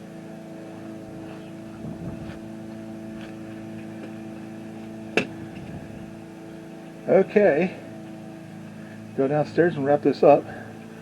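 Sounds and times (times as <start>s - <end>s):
low mechanical hum: 0.0s - 11.0s
small knock: 5.2s - 5.8s.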